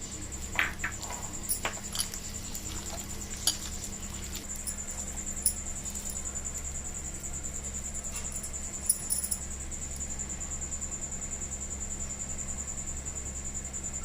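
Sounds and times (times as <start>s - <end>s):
mixing bowl knocks and scrapes: 0.4s - 5.1s.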